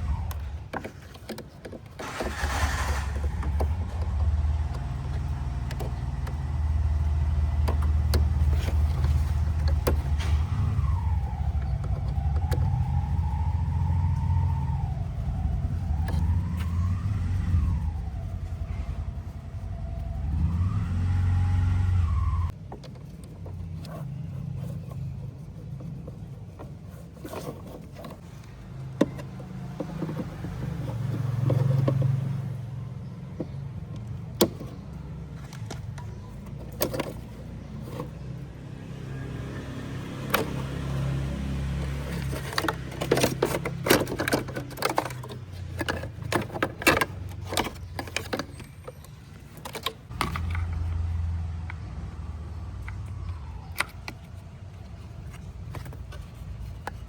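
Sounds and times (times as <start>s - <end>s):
fan motor humming and whining: 2.0s - 22.6s.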